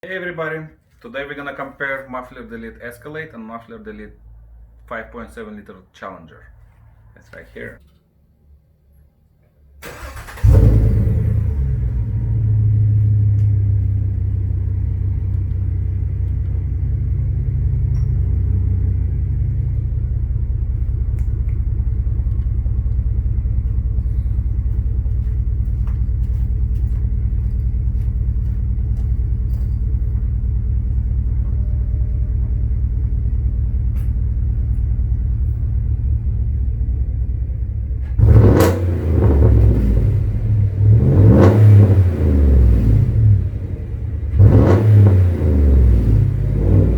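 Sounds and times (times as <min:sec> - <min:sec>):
car engine rumbling idle: 0:09.8 - 0:46.9
car engine starting: 0:09.8 - 0:46.9.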